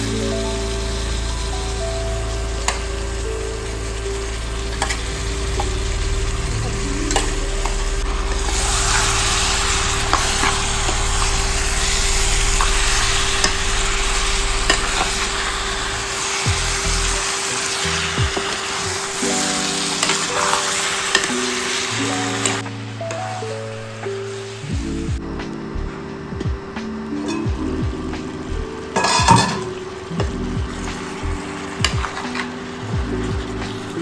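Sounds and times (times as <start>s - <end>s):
low hum: 0.0s - 17.2s, 24.6s - 32.2s
chicken sizzling in a pan: 0.0s - 24.7s, 27.2s - 34.0s.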